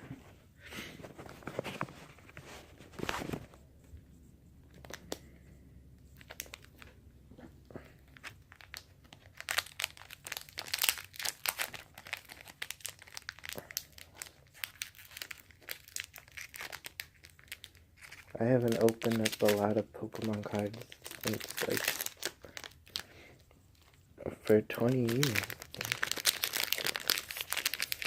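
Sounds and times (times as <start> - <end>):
foil wrapper tearing and crinkling: 8.1 - 23.0, 24.7 - 28.0.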